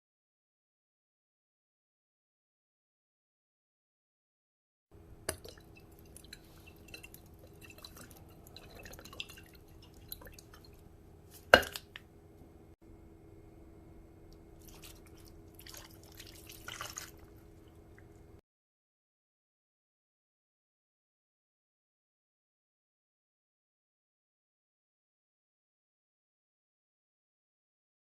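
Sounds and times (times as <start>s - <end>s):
steady low hum: 5.0s - 18.4s
liquid dripping: 5.2s - 12.1s, 14.3s - 18.4s.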